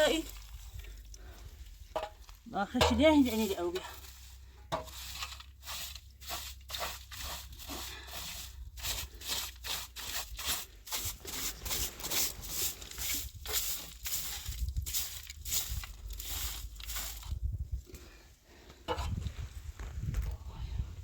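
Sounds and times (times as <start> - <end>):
rough scraping strokes: 2.9 - 17.3.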